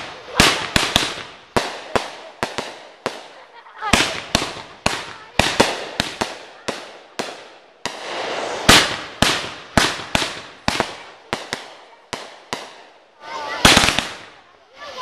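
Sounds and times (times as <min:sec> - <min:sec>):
fireworks bangs: 0:00.0 - 0:14.5
firework hissing rush: 0:07.8 - 0:11.6.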